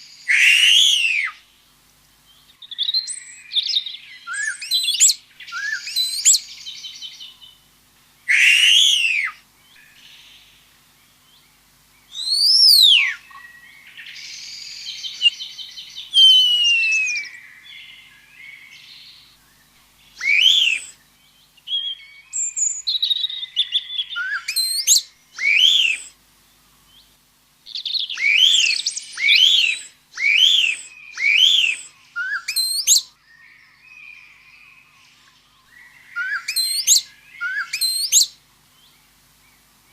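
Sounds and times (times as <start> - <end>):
birds calling and singing: 0.0 - 39.9.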